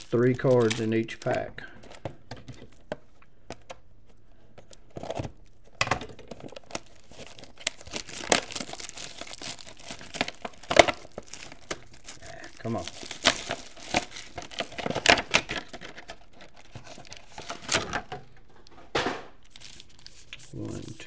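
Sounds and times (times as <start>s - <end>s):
wrapper crinkling and tearing: 0.0s - 1.9s, 5.0s - 18.3s, 19.4s - 20.7s.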